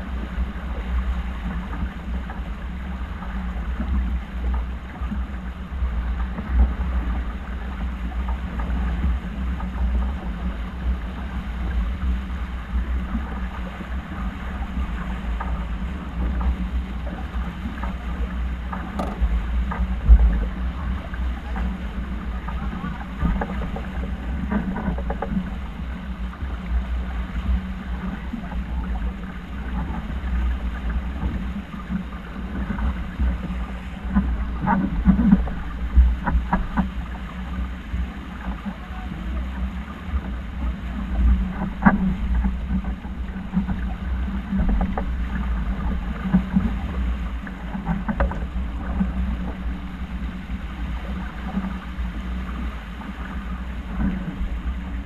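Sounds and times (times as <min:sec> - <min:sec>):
low steady hum: 0:00.0 - 0:55.0
water noise: 0:00.0 - 0:55.0
wind rumble on microphone: 0:00.0 - 0:55.0
brief knocks: 0:18.9 - 0:19.3.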